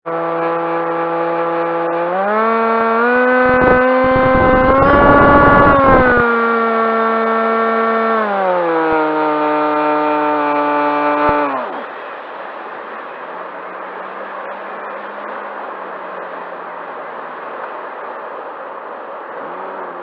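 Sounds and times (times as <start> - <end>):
electric motor and propeller running: 0.1 - 15.4
wind buffeting microphone: 3.0 - 8.2.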